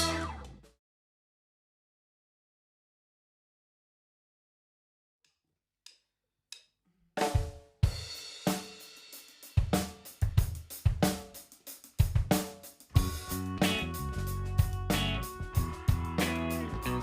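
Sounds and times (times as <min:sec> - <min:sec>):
funk band playing: 0:00.0 - 0:00.5, 0:12.2 - 0:17.0
drum kit: 0:00.0 - 0:00.6, 0:07.2 - 0:17.0.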